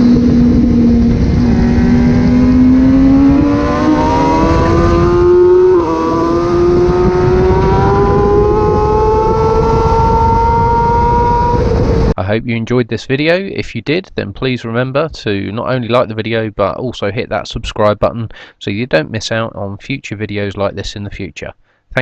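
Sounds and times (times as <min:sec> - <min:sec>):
motorcycle engine revving high: 0:00.0 - 0:12.2.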